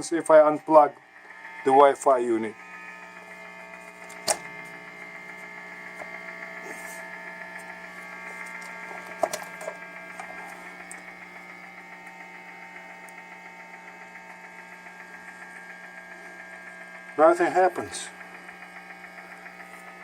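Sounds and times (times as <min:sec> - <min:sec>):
electrical hum and buzz: 0:00.0 - 0:20.0
sharp click: 0:04.0 - 0:04.8.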